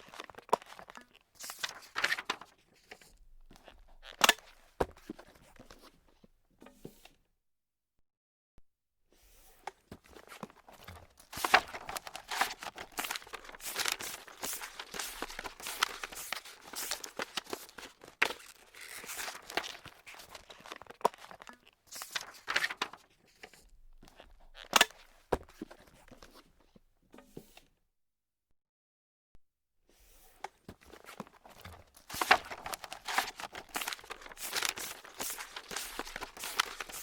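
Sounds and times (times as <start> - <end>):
paper being crumpled: 0.0 - 2.6, 10.2 - 23.1, 30.9 - 37.0.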